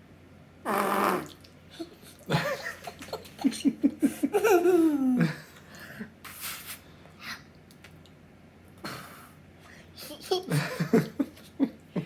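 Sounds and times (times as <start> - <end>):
young child giggling: 1.8 - 5.4, 10.1 - 12.0.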